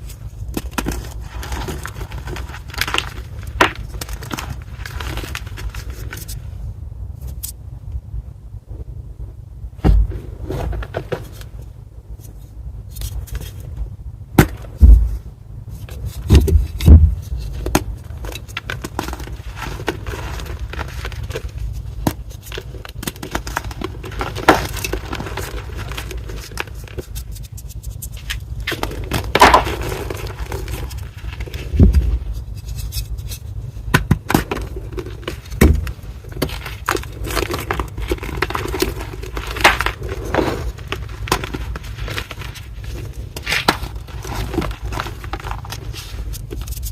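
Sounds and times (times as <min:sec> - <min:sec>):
chalk block crumbling: 0:00.0 - 0:06.4, 0:15.8 - 0:46.9
loud crunches of chalk: 0:00.0 - 0:06.4, 0:17.3 - 0:33.4, 0:34.0 - 0:46.9.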